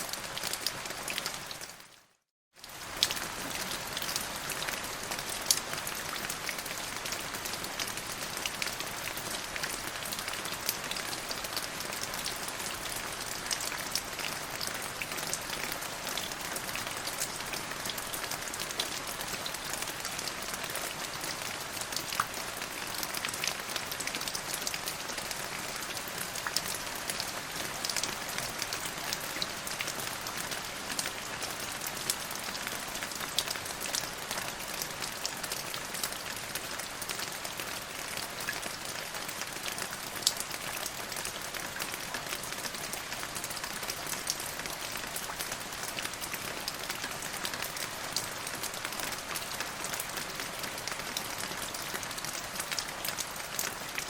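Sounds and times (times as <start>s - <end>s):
rain on a hard surface: 0.0s - 54.0s.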